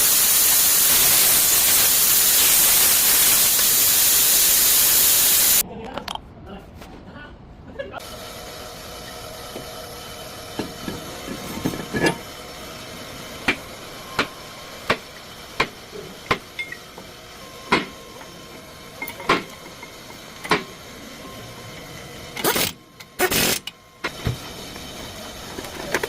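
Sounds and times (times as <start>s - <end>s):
steady hum: 7.7s - 26.0s.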